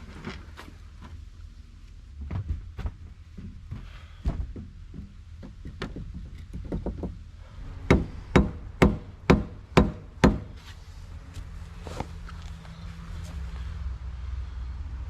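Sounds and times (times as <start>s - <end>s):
loud hammer blows: 7.7s - 10.5s.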